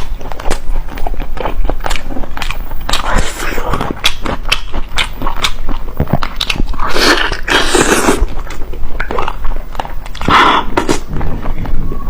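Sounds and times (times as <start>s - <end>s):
person biting and chewing food: 0.0s - 11.7s
wet mouth clicks: 1.8s - 11.1s.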